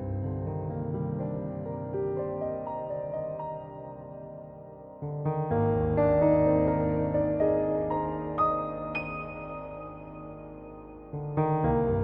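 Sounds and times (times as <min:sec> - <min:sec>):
piano chord ringing: 0:06.0 - 0:12.0.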